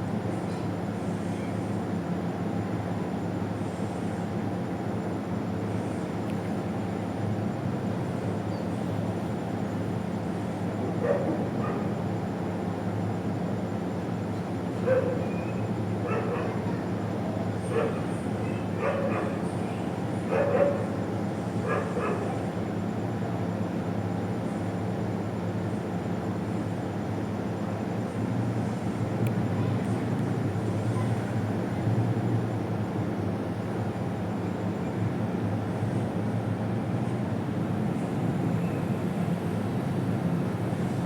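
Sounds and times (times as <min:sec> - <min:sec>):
dog barking: 0:11.0 - 0:12.0, 0:14.8 - 0:15.4, 0:16.0 - 0:16.8, 0:17.6 - 0:19.6, 0:20.3 - 0:21.0, 0:21.6 - 0:22.5.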